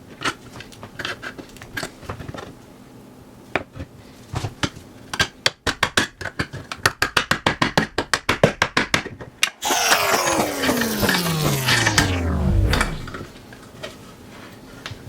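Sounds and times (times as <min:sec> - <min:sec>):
rasping noise with falling tones: 0:09.6 - 0:13.3.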